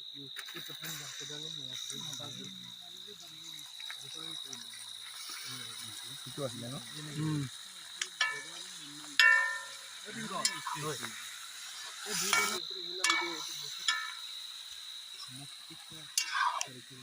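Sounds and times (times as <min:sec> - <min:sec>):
metal utensil clinking on pot: 0:08.0 - 0:11.0, 0:12.3 - 0:14.3, 0:16.2 - 0:16.7.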